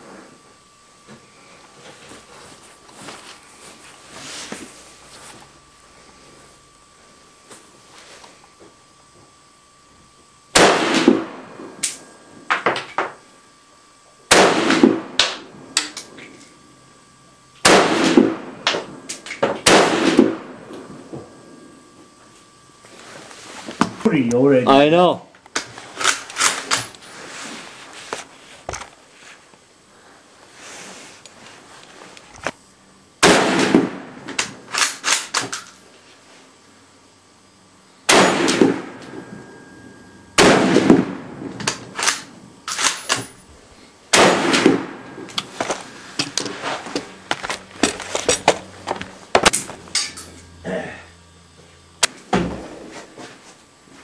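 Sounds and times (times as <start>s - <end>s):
rifle shots: 10.6s - 11.4s, 14.3s - 15.4s, 17.6s - 18.8s, 19.6s - 20.6s, 33.2s - 34.1s, 38.1s - 39.2s, 40.4s - 42.9s, 44.1s - 45.2s.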